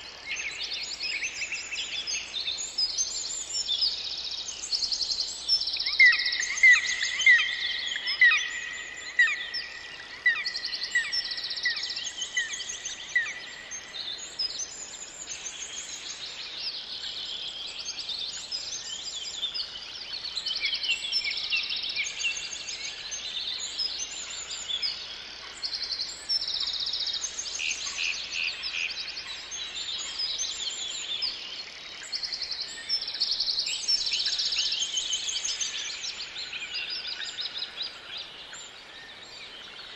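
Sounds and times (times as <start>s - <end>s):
birds chirping and trilling chorus: 0.0s - 39.9s.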